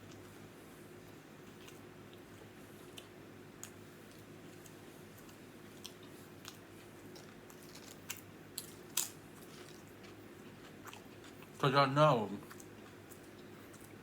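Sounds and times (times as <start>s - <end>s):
person chewing food: 1.4s - 11.6s, 12.4s - 14.0s.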